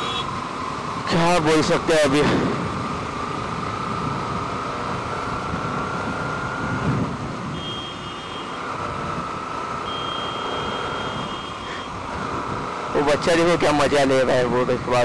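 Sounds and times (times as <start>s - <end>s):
road and traffic noise: 0.0s - 15.0s
thin steady whine: 0.0s - 15.0s
short high beep: 9.8s - 11.9s.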